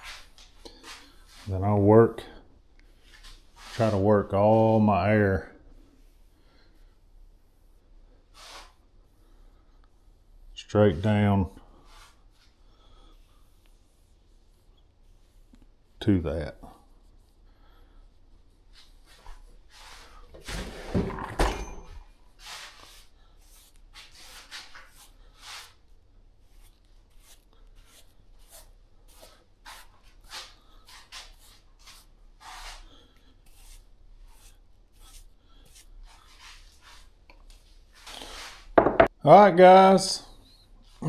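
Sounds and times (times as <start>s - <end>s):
hands rubbing damp hide: 0.0s - 1.6s, 7.0s - 16.0s, 16.8s - 20.8s, 22.3s - 39.0s
knock: 38.8s - 39.1s.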